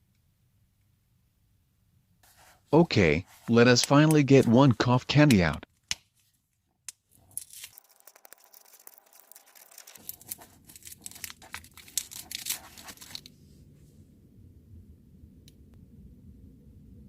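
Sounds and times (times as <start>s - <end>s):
wrapper tearing and crinkling: 7.2s - 13.3s.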